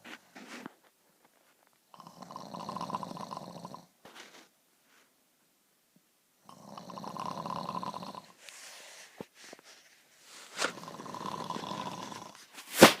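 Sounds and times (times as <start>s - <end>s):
woman snoring heavily: 1.9s - 3.9s, 6.4s - 8.4s, 10.7s - 12.4s.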